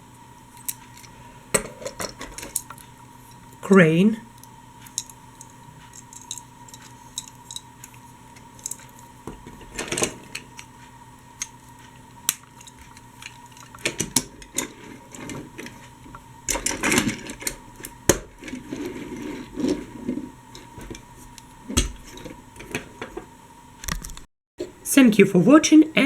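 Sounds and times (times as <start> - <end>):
faint steady hum: 0.0 - 26.0
toy trains clicking and knocking: 0.6 - 2.9, 4.8 - 10.7, 11.4 - 21.0.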